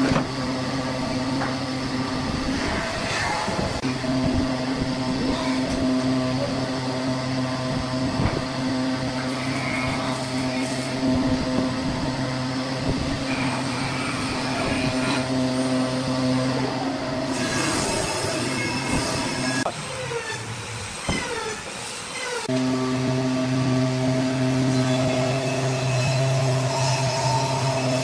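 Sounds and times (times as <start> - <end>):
wood lathe motor hum: 22.4 - 28.0.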